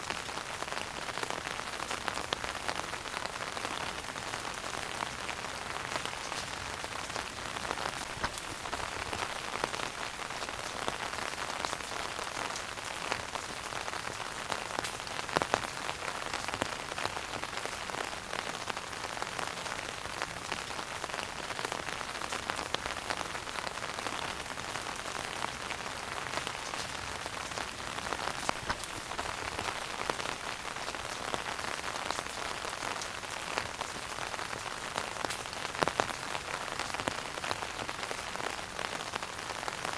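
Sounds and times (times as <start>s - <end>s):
wood fire crackling and popping: 7.7s - 10.8s, 26.2s - 31.5s.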